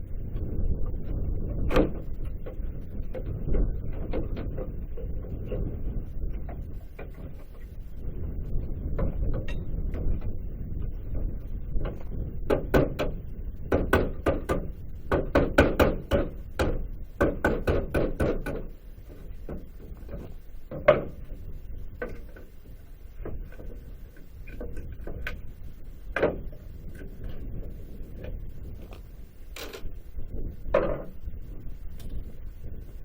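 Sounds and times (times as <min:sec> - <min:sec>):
hammer blows on wooden boards: 0:11.8 - 0:18.8.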